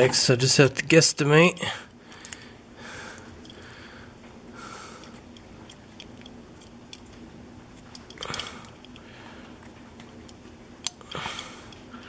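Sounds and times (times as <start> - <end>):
small metallic clicks and scraping: 5.0 - 7.2, 7.8 - 11.9.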